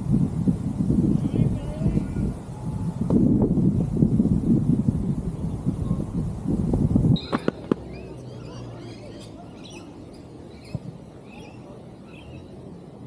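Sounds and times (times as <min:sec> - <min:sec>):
wind buffeting microphone: 0:00.0 - 0:09.9
birds chirping: 0:07.2 - 0:13.0.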